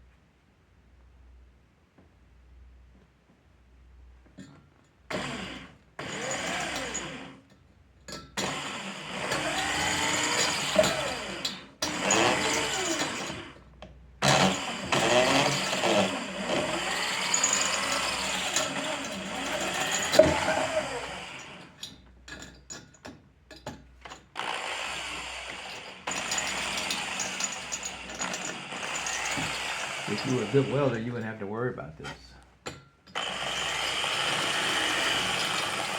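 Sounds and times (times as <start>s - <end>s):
electric power tool motor: 5.1s - 7.4s, 8.4s - 13.6s, 14.2s - 21.8s, 24.4s - 31.2s, 33.2s - 35.9s.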